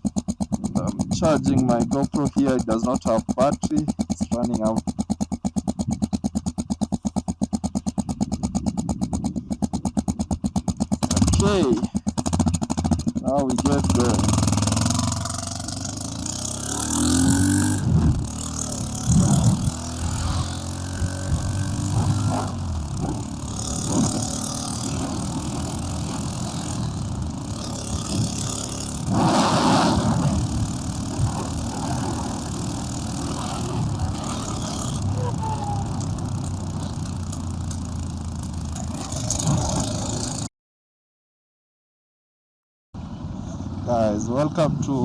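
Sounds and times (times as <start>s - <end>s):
motorcycle engine running: 0.0s - 40.5s
rush of passing vehicle: 29.0s - 30.4s.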